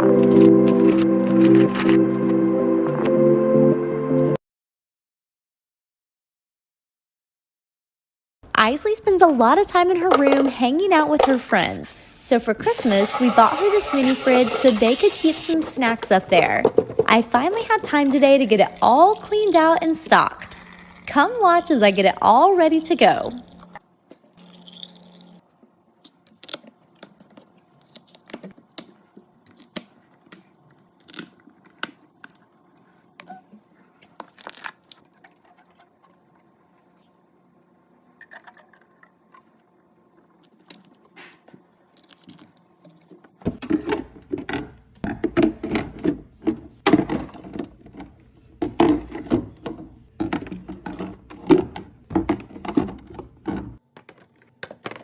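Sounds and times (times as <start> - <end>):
containers clicking and scraping: 12.7 - 15.7.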